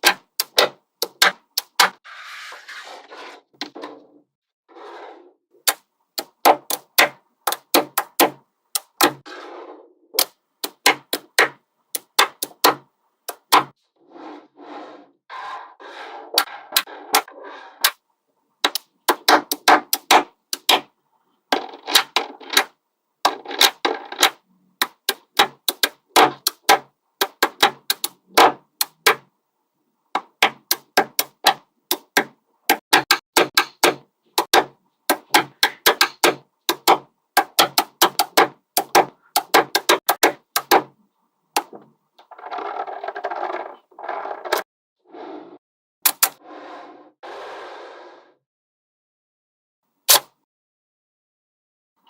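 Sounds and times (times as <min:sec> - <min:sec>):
magnetic balls clicking together: 0:05.6 - 0:09.1, 0:10.2 - 0:12.7, 0:23.3 - 0:29.2.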